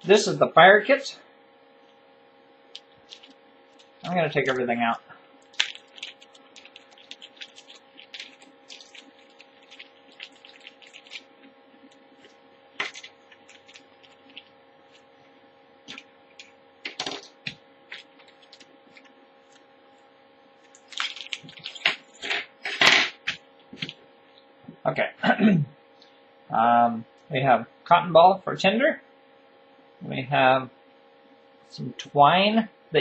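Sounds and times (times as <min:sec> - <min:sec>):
faint steady hum: 0:00.0 - 0:33.0
rustling and handling: 0:02.6 - 0:24.4
plastic bags crinkling: 0:02.7 - 0:04.8, 0:05.4 - 0:15.2, 0:15.8 - 0:19.7, 0:20.6 - 0:22.3.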